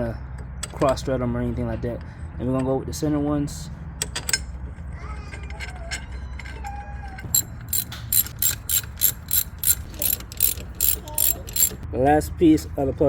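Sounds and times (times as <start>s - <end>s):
hand ratchet clicking: 7.2s - 11.8s.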